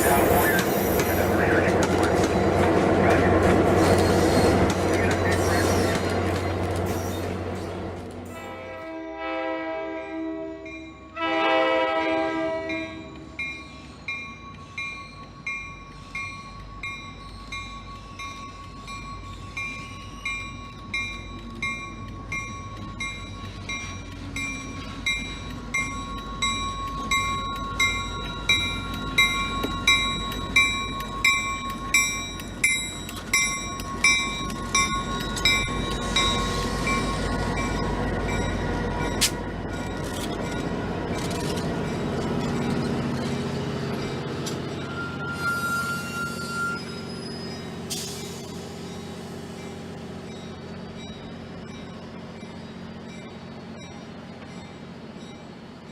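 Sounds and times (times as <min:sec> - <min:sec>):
low train rumble: 0:00.0 - 0:55.9
train horn blasts: 0:08.3 - 0:13.2
bell ringing: 0:12.8 - 0:39.9.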